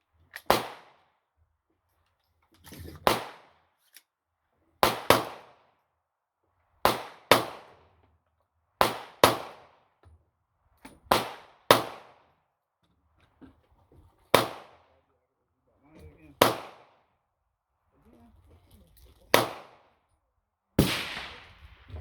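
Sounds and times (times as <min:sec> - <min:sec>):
gunshots with echoing tail: 0:16.4 - 0:16.9, 0:19.3 - 0:19.8, 0:20.8 - 0:22.0.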